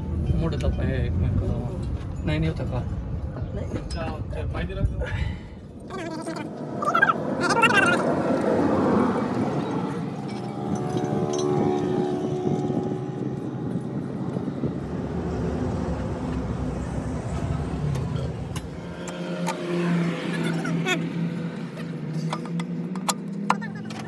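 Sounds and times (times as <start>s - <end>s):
vehicle engine running: 6.4s - 24.0s.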